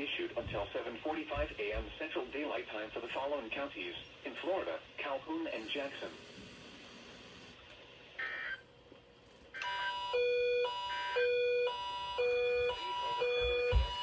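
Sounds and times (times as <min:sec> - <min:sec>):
electronic two-tone alarm: 0:09.6 - 0:14.0.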